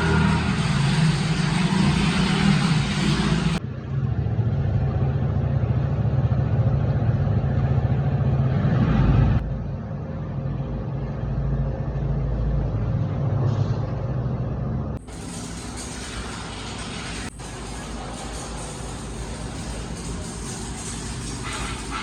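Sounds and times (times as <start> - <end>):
road noise: 0.0 - 15.1.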